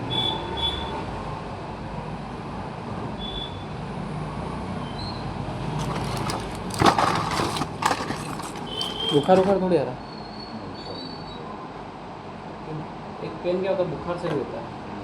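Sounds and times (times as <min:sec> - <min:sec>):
clicks and rustles: 0:05.7 - 0:09.6.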